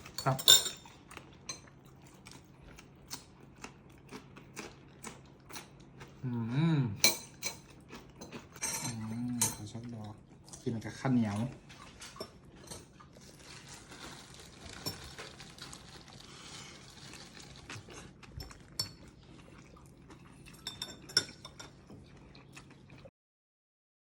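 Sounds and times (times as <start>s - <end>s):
utensil clinking on plate: 0.2s - 0.8s.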